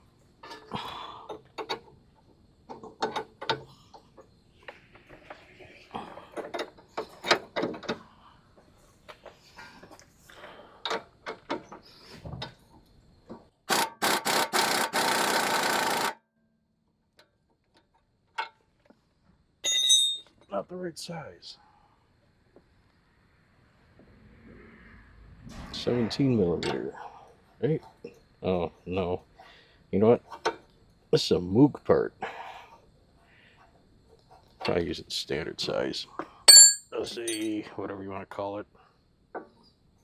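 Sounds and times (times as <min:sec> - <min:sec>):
metal hand tools clinking: 0:36.5 - 0:37.5.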